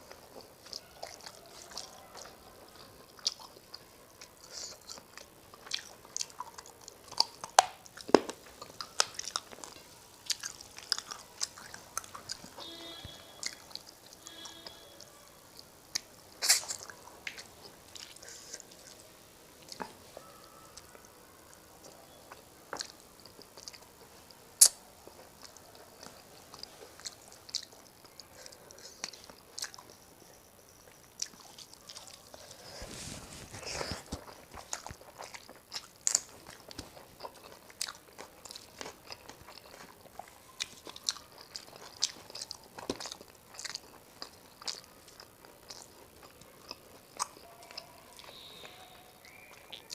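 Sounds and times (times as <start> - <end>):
person chewing food: 0.0 - 49.9
mouth clicks and smacks: 15.9 - 19.0.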